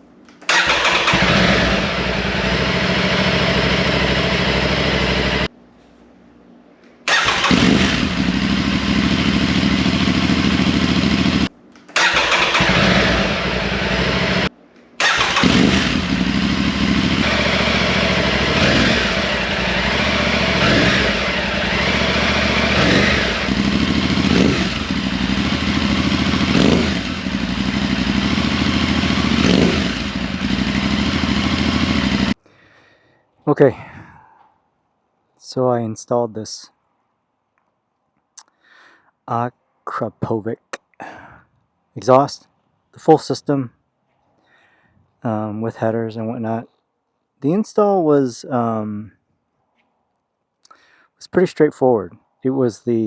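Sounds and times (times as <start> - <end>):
motorcycle engine idling and revving: 0.5 - 5.5, 7.1 - 32.4.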